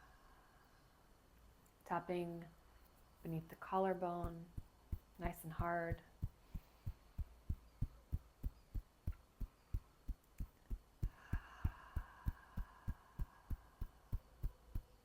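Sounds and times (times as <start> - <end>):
faint steady hum: 0.0 - 15.0
fingertips tapping on chest: 4.1 - 15.0.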